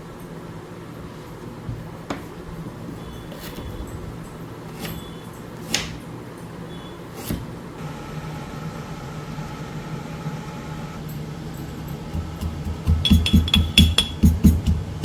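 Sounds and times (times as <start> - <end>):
kitchen utensils knocking: 11.9 - 15.0.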